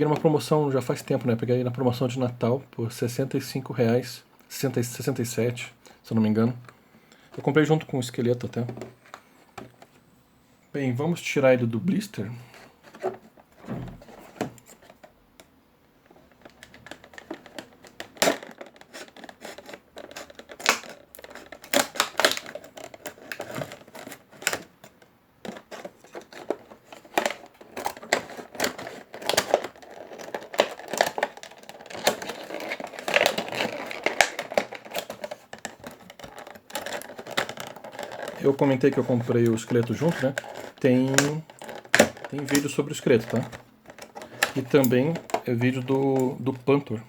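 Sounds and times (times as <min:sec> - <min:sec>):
plastic packaging being torn open: 0:16.4 - 0:46.6.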